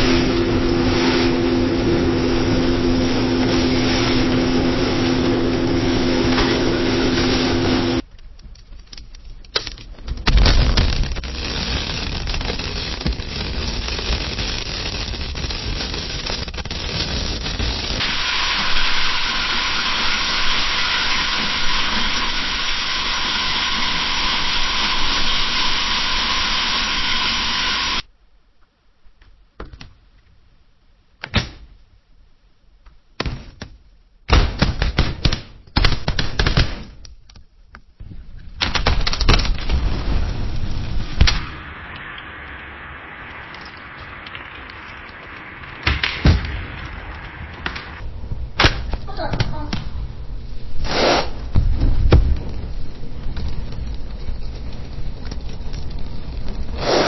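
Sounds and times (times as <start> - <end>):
wood fire crackling and hissing: 0.0 - 29.2, 35.7 - 57.0
fire pops and snaps: 8.0 - 18.3, 32.8 - 57.0.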